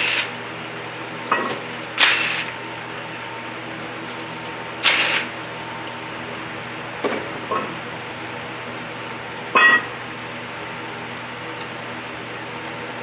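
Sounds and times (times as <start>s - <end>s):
power tool bursts: 0.0s - 0.4s, 2.0s - 2.6s, 4.8s - 5.4s.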